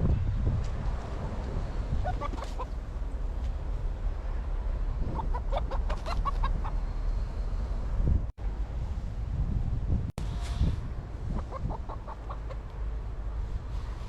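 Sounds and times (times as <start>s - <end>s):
wind rumble on microphone: 0.0s - 14.0s
chicken clucking: 2.0s - 2.8s, 5.1s - 6.8s, 11.3s - 12.7s.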